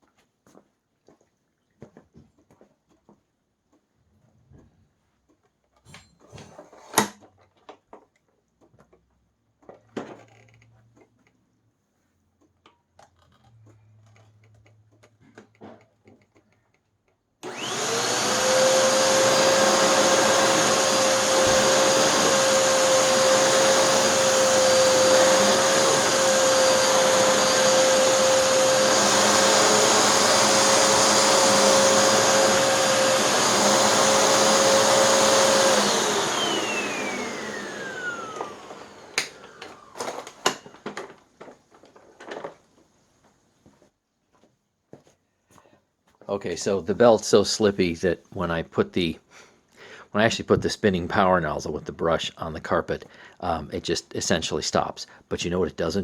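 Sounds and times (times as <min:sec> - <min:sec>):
stick vacuum motor whine: 0:17.4 - 0:41.6.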